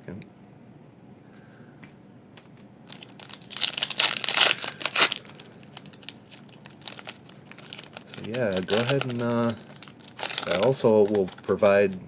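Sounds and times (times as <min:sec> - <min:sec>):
plastic wrapper crinkling and tearing: 0:02.9 - 0:12.0.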